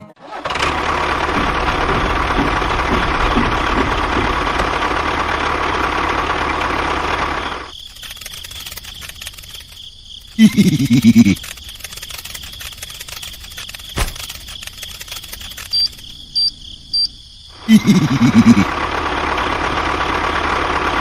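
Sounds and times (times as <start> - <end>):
motor running: 0.5 - 16.0.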